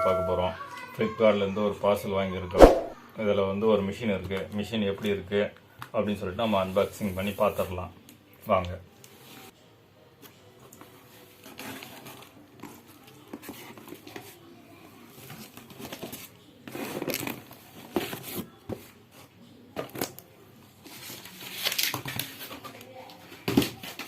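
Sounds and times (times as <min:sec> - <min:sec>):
packaging rustling and tearing: 0:15.2 - 0:18.4, 0:20.8 - 0:22.8.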